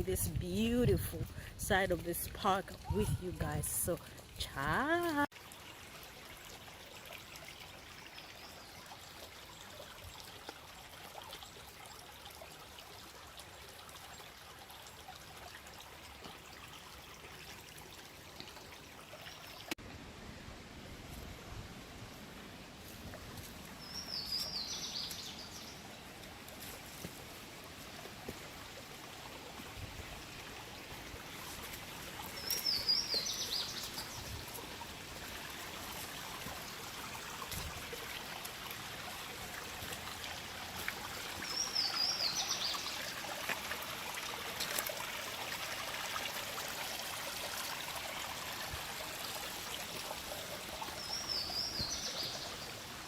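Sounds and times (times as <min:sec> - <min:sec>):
water running: 0:01.6 - 0:08.4, 0:23.9 - 0:53.0.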